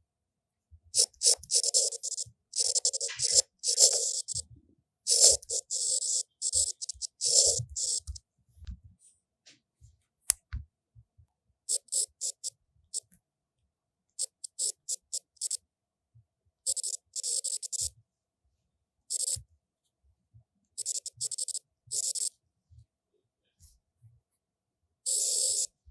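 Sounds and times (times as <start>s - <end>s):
scratchy pen strokes: 0.9s - 4.4s, 5.1s - 8.2s, 11.7s - 13.1s, 14.2s - 15.6s, 16.7s - 17.9s, 19.1s - 19.4s, 20.8s - 22.4s, 25.1s - 25.8s.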